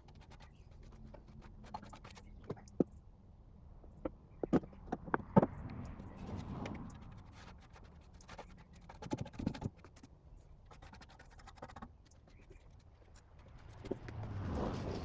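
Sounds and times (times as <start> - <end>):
paintbrush scratching on metal: 0.0 - 2.8, 5.8 - 15.0.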